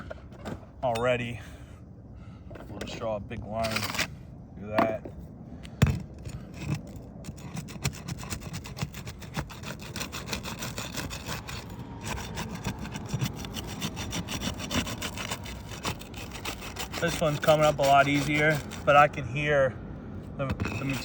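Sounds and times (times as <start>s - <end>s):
shingle tearing loose crackling: 3.6s - 4.2s, 6.0s - 19.1s, 20.4s - 21.0s.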